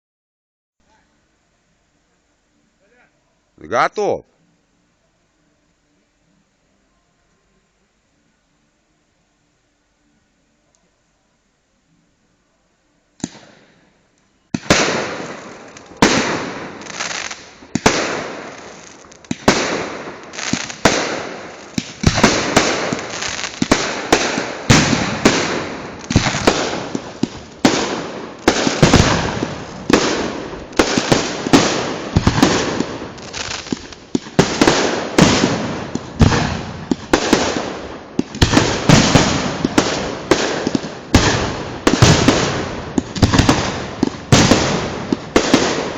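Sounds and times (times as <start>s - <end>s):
firework bangs: 14.5s - 45.9s.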